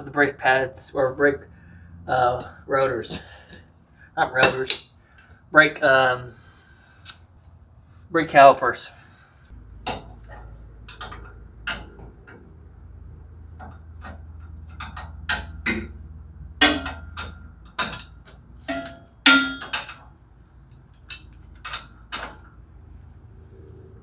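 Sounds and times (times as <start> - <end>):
metal tools clanking: 2.2 - 3.7, 4.4 - 5.4, 9.7 - 12.6, 13.4 - 22.6
faint low hum: 18.4 - 24.0.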